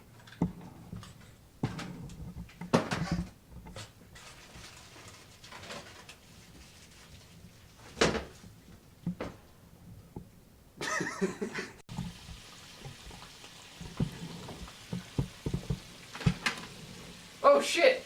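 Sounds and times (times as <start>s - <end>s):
pans and utensils clattering: 0.4s - 6.5s, 11.9s - 17.3s
chicken frying in hot oil: 11.9s - 18.0s.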